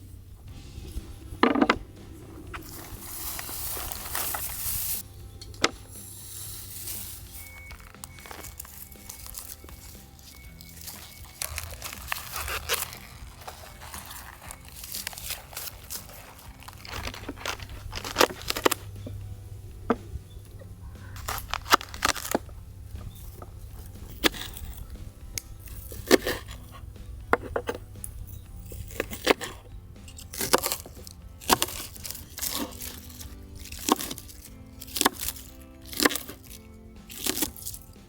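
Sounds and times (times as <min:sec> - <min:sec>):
quiet background music: 0:00.0 - 0:38.0
sharp clicks and crunches: 0:00.8 - 0:38.0.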